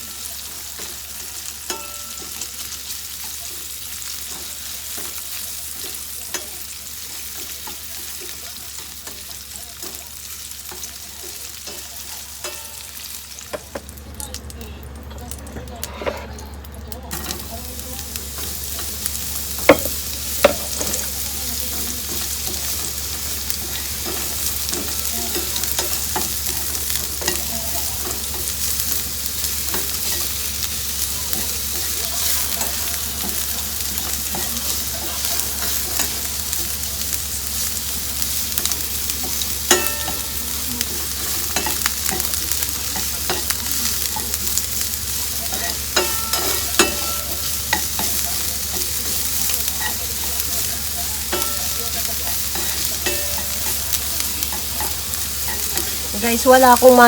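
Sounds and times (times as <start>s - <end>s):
bacon sizzling in a pan: 0.0s - 57.0s
utensil knocking against pan: 13.5s - 13.8s, 19.6s - 20.9s.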